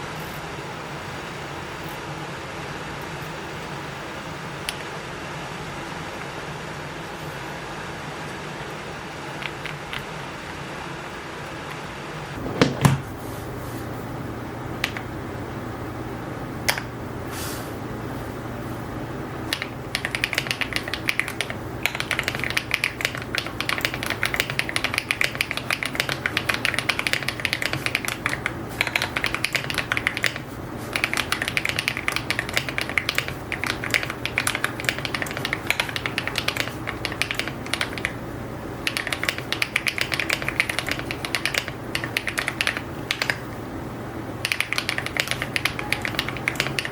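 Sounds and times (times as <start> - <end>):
low steady hum: 0.0 - 46.9
mechanical keyboard typing: 9.4 - 10.1, 14.8 - 15.1, 19.5 - 38.2, 38.8 - 43.5, 44.4 - 46.9.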